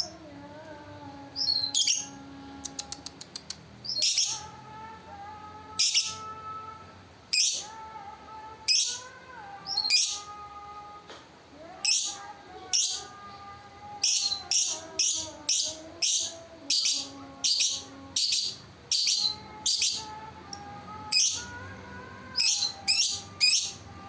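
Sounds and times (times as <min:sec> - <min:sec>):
lovebird high-pitched calls: 0:01.4 - 0:02.2, 0:03.8 - 0:04.5, 0:05.8 - 0:06.3, 0:07.3 - 0:07.7, 0:08.7 - 0:09.1, 0:09.7 - 0:10.3, 0:11.8 - 0:13.1, 0:14.0 - 0:20.2, 0:21.1 - 0:21.6, 0:22.3 - 0:23.8
bird clicks: 0:02.6 - 0:03.7.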